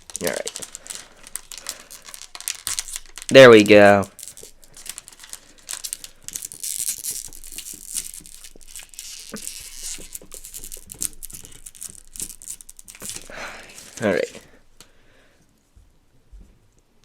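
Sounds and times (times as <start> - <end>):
snack wrapper crinkling: 0.0 - 14.6.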